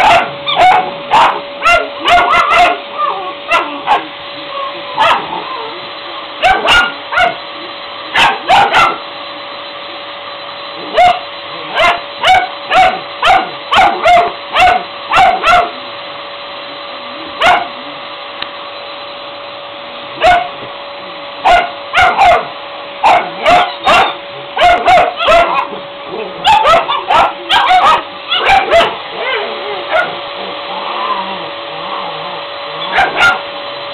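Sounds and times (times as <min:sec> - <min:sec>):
puppies yapping: 0:00.0 - 0:07.4, 0:08.1 - 0:09.0, 0:10.8 - 0:15.7, 0:17.4 - 0:17.7, 0:20.2 - 0:20.6, 0:21.4 - 0:33.4
puppies whining: 0:00.0 - 0:09.0, 0:10.7 - 0:15.9, 0:16.7 - 0:18.2, 0:23.0 - 0:33.4
vacuum cleaner hum: 0:00.0 - 0:33.9.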